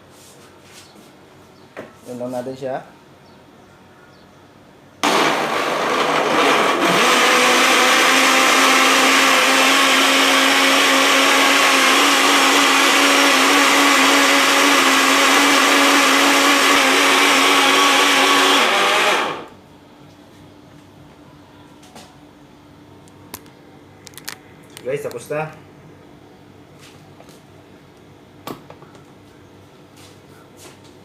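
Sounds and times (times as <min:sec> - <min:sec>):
electric blender running: 0:05.0 - 0:19.6.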